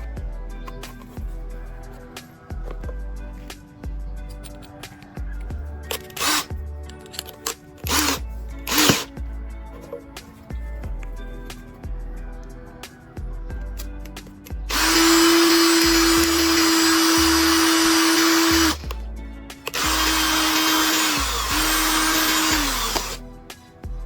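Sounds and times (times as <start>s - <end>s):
background music: 0.0s - 24.0s
electric power drill running: 5.9s - 6.5s, 7.9s - 9.1s, 14.7s - 18.9s, 19.7s - 23.2s.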